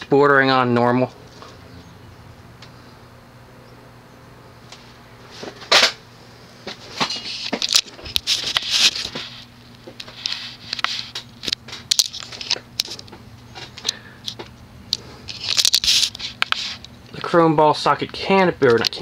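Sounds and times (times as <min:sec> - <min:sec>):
ceiling fan motor humming: 0:00.0 - 0:19.0
sharp clicks and crackling: 0:06.7 - 0:17.4, 0:18.0 - 0:19.0.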